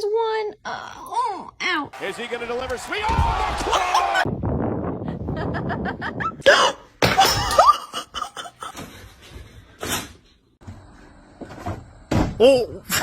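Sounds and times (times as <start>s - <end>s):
person laughing: 3.6s - 4.2s, 7.2s - 8.8s.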